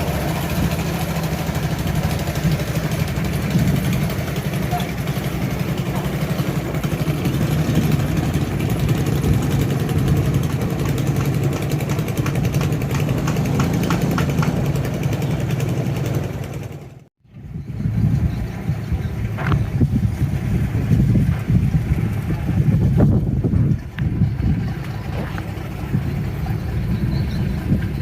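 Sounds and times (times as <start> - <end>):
boat diesel engine running: 0.0 - 28.0.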